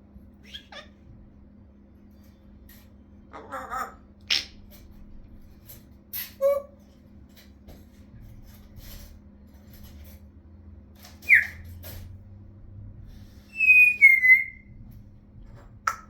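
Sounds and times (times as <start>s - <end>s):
parrot squeak: 0.4s - 1.0s, 6.2s - 6.8s, 11.2s - 11.7s, 13.5s - 14.7s.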